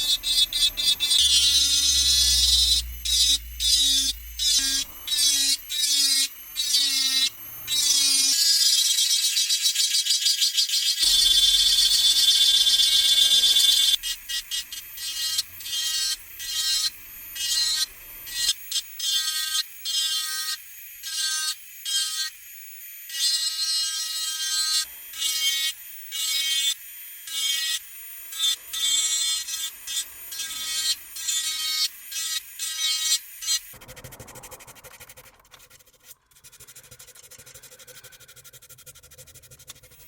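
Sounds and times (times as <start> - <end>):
sanding rasping strokes: 28.3 - 40.0.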